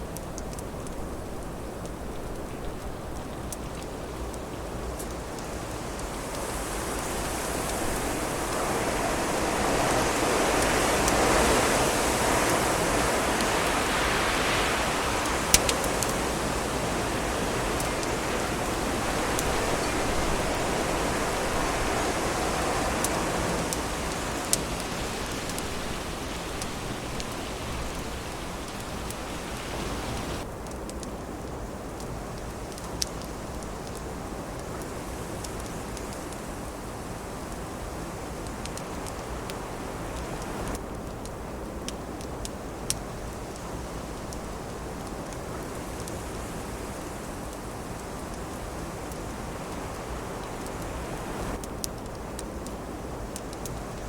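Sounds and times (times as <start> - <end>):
wood fire crackling: 0.0 - 54.0
wind gust rushing: 5.2 - 30.4, 45.8 - 51.6.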